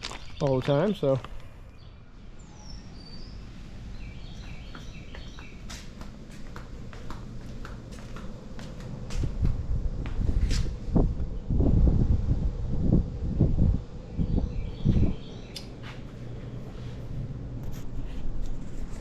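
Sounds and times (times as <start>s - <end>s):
bird chirping: 0.0s - 5.9s, 14.1s - 15.9s
low rumbling noise: 1.2s - 19.0s
sharp clicks: 15.5s - 15.7s.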